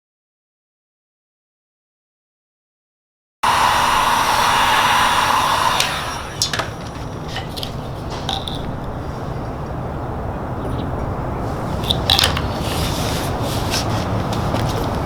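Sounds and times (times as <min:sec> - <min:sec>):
power tool running: 0:03.4 - 0:07.8.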